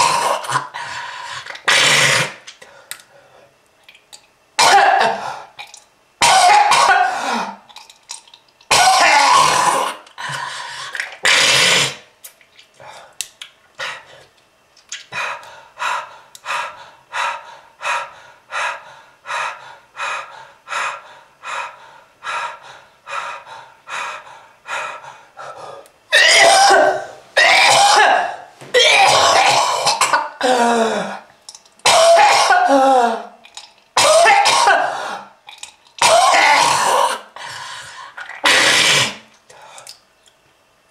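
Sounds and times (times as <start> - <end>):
hacking coughs with groaning voice: 4.6 - 5.2, 6.2 - 7.2, 26.1 - 30.6, 31.8 - 32.8, 34.0 - 35.0, 36.0 - 37.2
person coughing: 4.6 - 5.3, 6.2 - 7.6, 8.7 - 10.0, 26.1 - 33.2, 34.0 - 35.2, 36.0 - 37.2.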